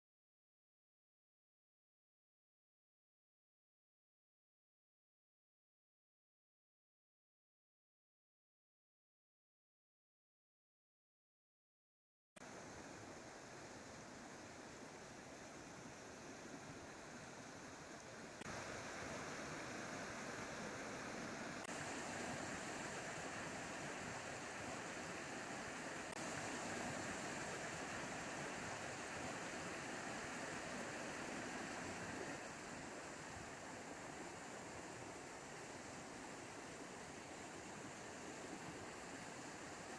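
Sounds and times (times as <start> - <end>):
faint steady rushing noise: 12.4 - 39.9.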